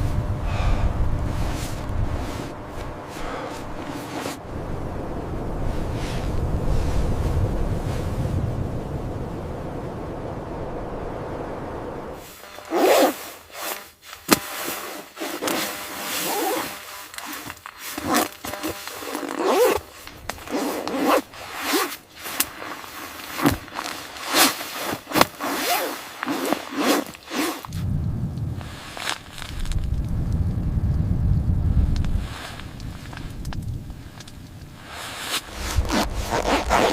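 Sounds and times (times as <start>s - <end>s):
steady low rumble: 0.0s - 12.3s, 27.7s - 36.9s
scraping and rustling strokes: 1.2s - 4.4s, 5.6s - 8.3s, 12.2s - 30.0s, 32.0s - 36.9s.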